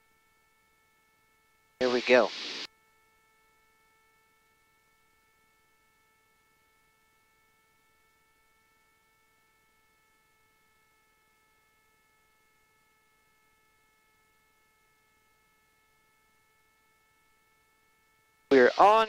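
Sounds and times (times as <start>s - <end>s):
faint electrical hum: 0.0s - 19.0s
low hiss: 1.8s - 2.7s, 18.5s - 19.0s.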